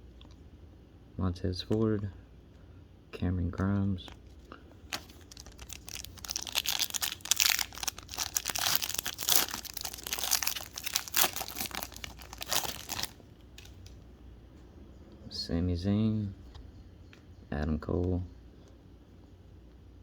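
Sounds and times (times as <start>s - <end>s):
plastic wrapper crinkling: 4.8s - 14.0s.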